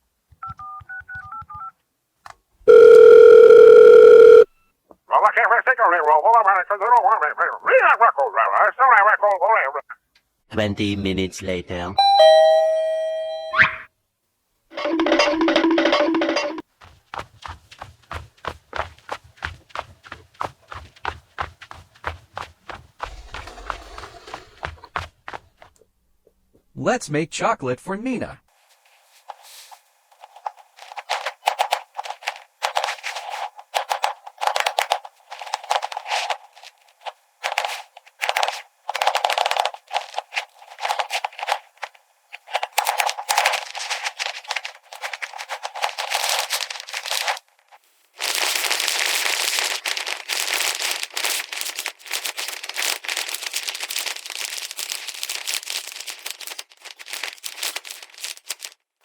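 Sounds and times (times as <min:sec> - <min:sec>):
crackling handling noises: 0:28.5 - 0:59.0
dense crackle: 0:30.1 - 0:58.9.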